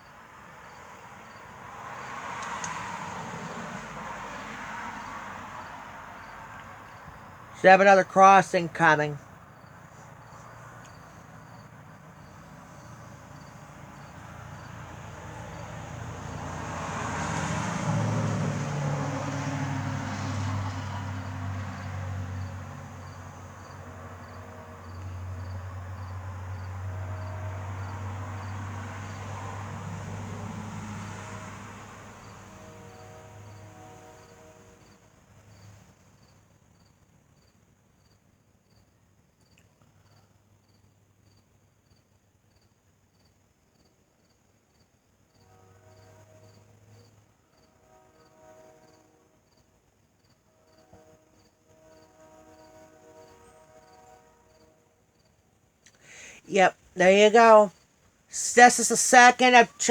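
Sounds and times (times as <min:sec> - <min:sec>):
crickets chirping: 0:00.0 - 0:59.9
distant train rumble: 0:02.4 - 0:35.6.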